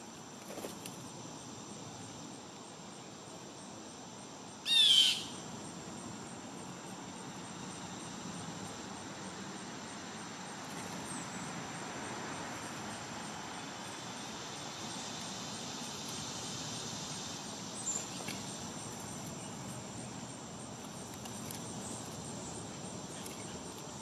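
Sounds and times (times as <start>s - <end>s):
faint insect chirps: 0.0s - 24.0s
outdoor hiss: 0.0s - 24.0s
bird call: 4.7s - 5.4s.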